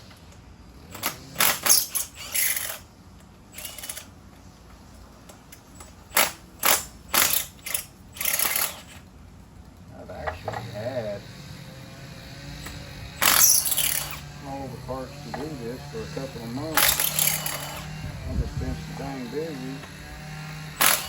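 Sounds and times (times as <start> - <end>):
impact wrench hammering: 5.8 - 8.9, 12.6 - 14.2, 16.7 - 18.0, 20.7 - 21.0.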